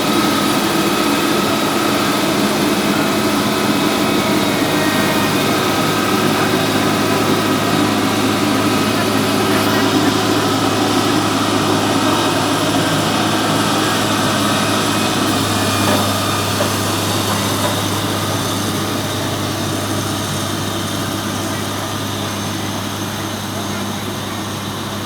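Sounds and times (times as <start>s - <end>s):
heavy machinery engine humming: 0.0s - 25.0s.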